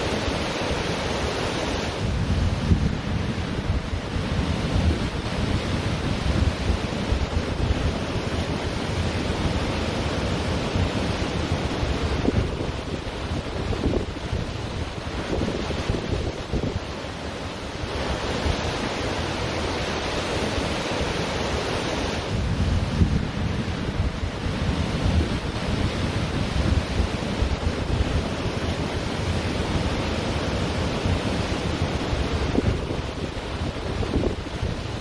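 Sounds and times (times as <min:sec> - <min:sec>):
ocean waves washing on beach: 0:00.0 - 0:35.0
wind buffeting microphone: 0:01.9 - 0:19.5, 0:22.2 - 0:35.0.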